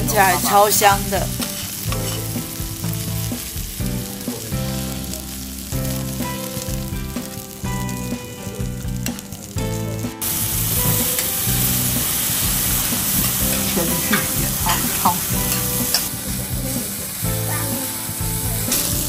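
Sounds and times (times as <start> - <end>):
food sizzling on a griddle: 0.0 - 19.0.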